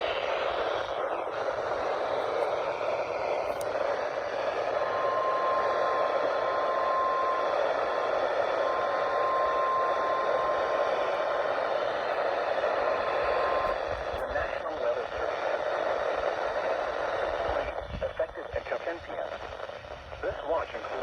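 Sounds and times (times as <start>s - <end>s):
radio static hiss: 0.0s - 21.0s
weather radio alarm tone: 4.3s - 14.7s.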